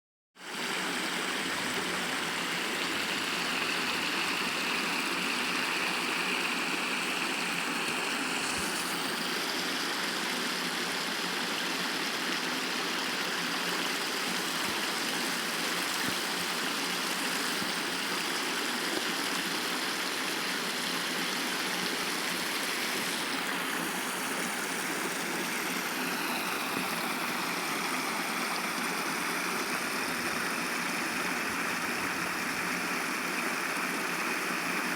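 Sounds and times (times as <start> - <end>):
stream water rushing: 0.4 - 34.9.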